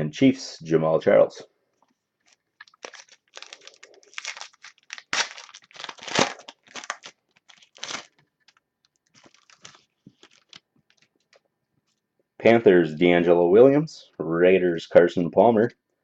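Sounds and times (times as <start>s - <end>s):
cards and packaging rustling: 1.9s - 11.5s.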